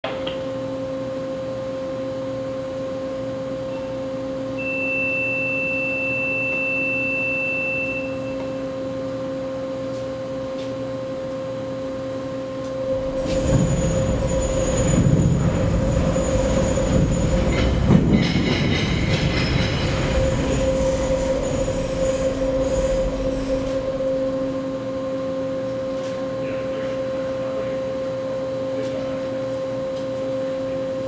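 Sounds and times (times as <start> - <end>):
steady mechanical hum: 0.0 - 31.0
high steady squeal: 12.8 - 25.2
loud rumble: 12.9 - 25.1
thin high tone: 19.6 - 25.2.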